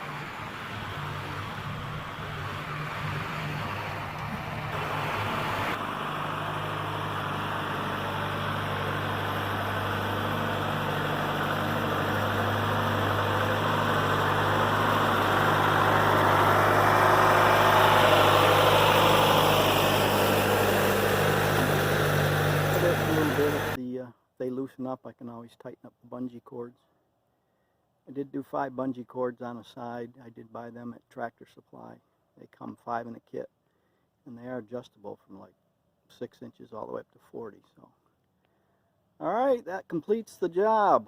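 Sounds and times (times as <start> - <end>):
diesel backhoe engine running: 0.0 - 23.8.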